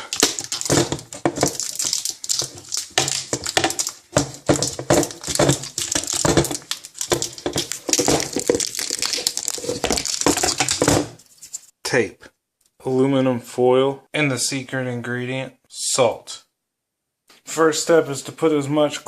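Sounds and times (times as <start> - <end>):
aluminium foil crinkling: 0.0 - 11.7.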